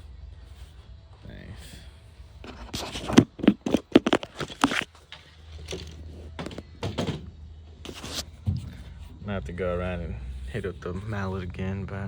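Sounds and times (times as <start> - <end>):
faint low hum: 0.0 - 12.0
knocks and rubbing scrapes: 2.4 - 9.2.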